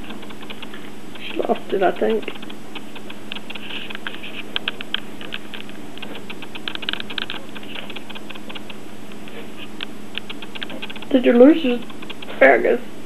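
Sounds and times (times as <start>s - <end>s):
steady low hum: 0.0s - 13.0s
puppy mouth smacking and clicking: 2.2s - 8.8s, 9.8s - 11.1s.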